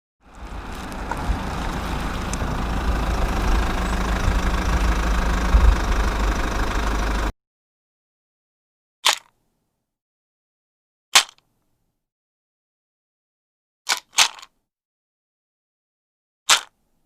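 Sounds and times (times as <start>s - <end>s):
engine rumbling: 0.2s - 7.3s.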